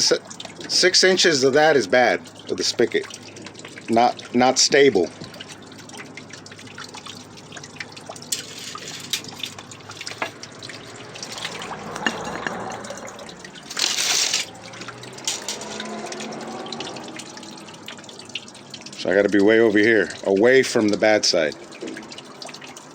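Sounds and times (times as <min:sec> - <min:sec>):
water dripping and trickling: 0:00.0 - 0:22.9.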